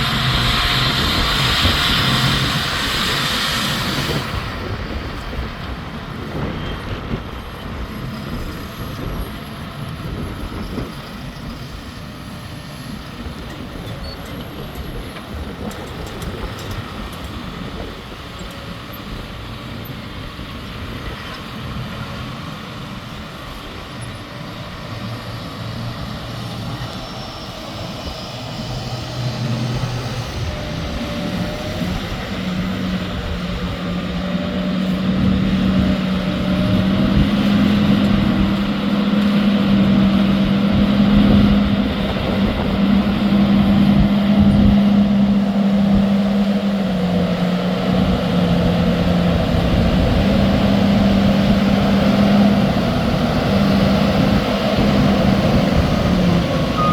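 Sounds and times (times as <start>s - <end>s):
tractor engine running: 0.0s - 56.9s.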